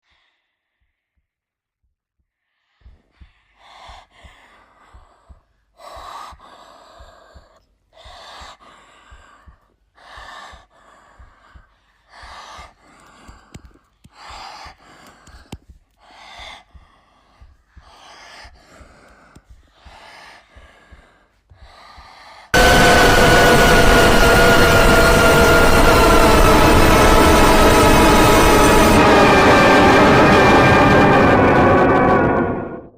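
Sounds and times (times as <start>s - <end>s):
slow heavy breathing: 2.5s - 22.6s.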